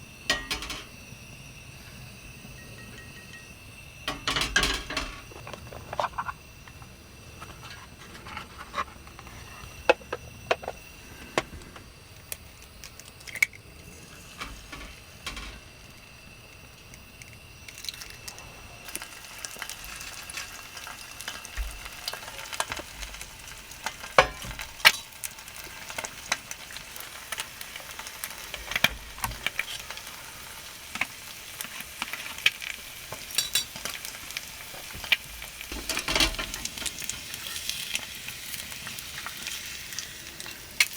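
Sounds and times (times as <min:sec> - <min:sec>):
food sizzling in a pan: 0:00.0 - 0:40.9
utensils and dishes clicking: 0:00.3 - 0:01.0, 0:02.4 - 0:11.6, 0:12.3 - 0:16.0, 0:23.8 - 0:25.3, 0:30.9 - 0:39.7.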